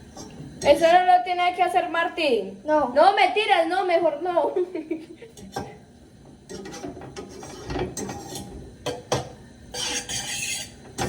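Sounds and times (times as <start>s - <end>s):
scraping on counter: 6.5s - 11.0s.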